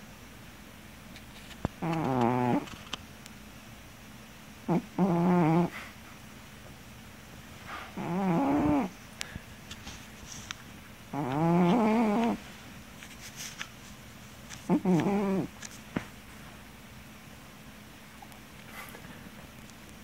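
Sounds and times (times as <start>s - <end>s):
cat snoring: 1.8s - 2.6s, 4.7s - 5.9s, 7.8s - 8.9s, 11.1s - 12.4s, 14.7s - 15.5s.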